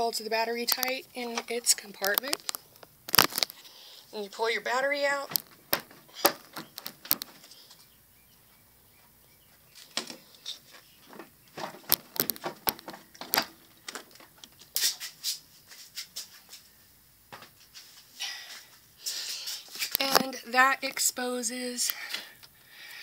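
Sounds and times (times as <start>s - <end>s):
clicks and knocks of handled parts: 0.7s - 3.6s, 5.3s - 7.9s, 9.8s - 14.8s.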